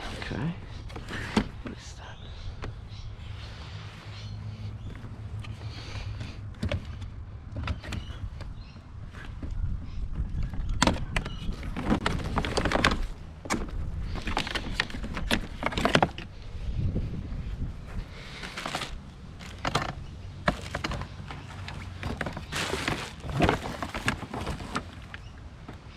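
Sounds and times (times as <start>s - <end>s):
rustling: 17.9s - 25.9s
objects knocking and clattering: 18.6s - 25.0s.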